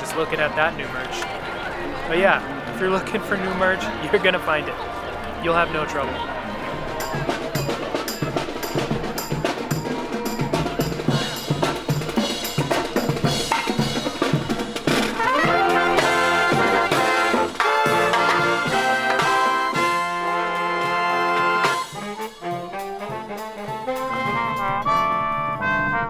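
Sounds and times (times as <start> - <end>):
steady drum beat: 5.4 - 24.8
brass horns playing chords: 11.0 - 26.0.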